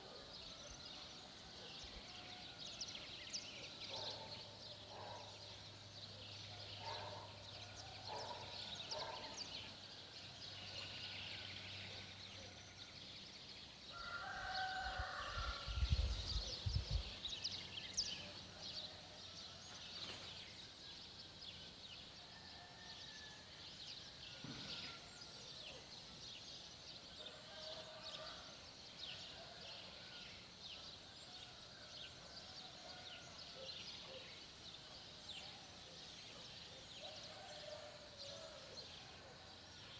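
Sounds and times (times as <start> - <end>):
birds chirping: 1.8 - 9.6.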